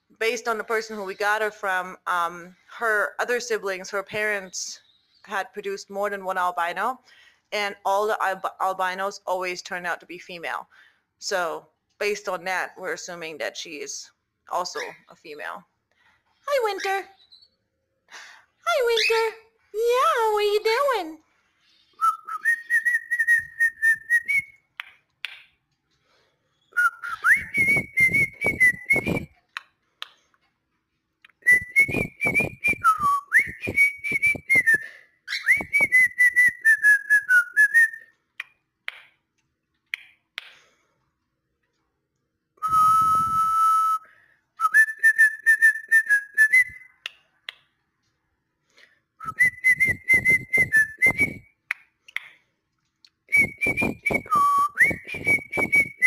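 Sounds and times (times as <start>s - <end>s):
cockatiel whistling: 21.9s - 24.5s, 31.5s - 38.0s.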